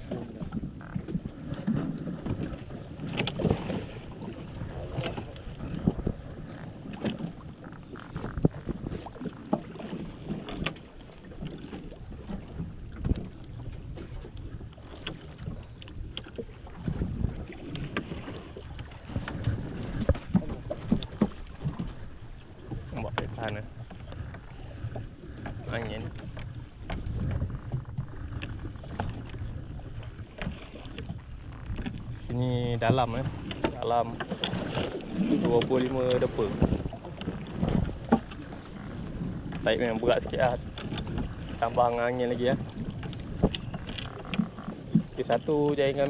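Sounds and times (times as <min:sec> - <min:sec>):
wind rumble on microphone: 0:00.0 - 0:46.0
knocks against boat: 0:19.1 - 0:21.9.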